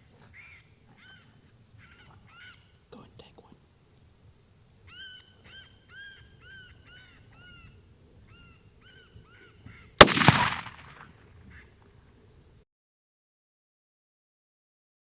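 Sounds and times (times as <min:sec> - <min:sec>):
rifle shot echoing: 0:10.0 - 0:11.2.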